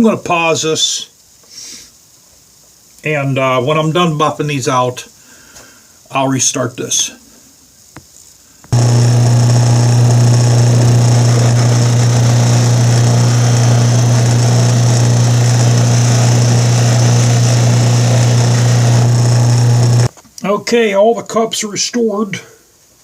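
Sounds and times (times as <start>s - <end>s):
buffing machine humming: 8.7s - 20.1s.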